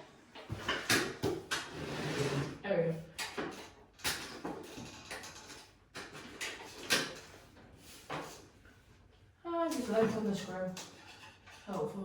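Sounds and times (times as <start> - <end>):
knocks and clicks of handling tools: 0.3 - 1.7, 3.2 - 8.4.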